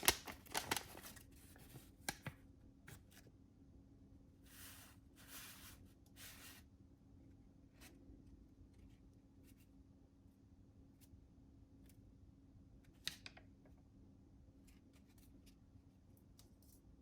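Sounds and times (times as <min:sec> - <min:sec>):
soft scraping strokes: 0:04.4 - 0:06.7.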